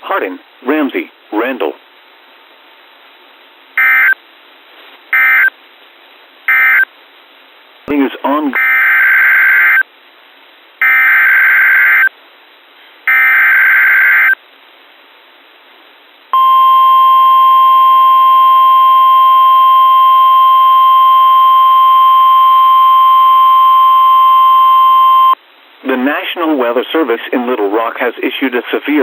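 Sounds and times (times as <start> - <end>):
steady alarm tone: 3.8 - 4.2, 16.4 - 25.4.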